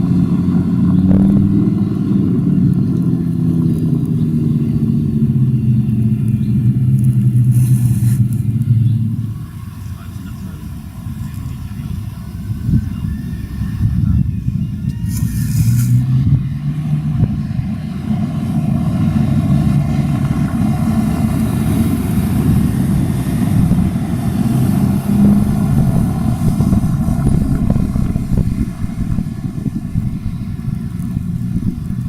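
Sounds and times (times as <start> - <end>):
car engine running at low revs: 0.0 - 32.0
short hiss: 7.4 - 8.4, 15.0 - 16.0.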